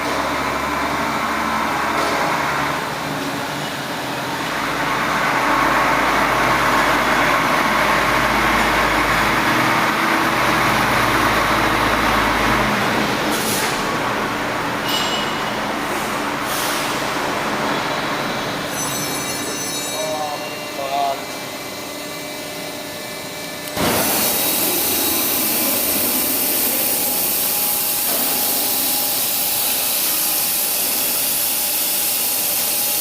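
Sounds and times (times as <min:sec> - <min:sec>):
band saw running: 0:17.0 - 0:33.0.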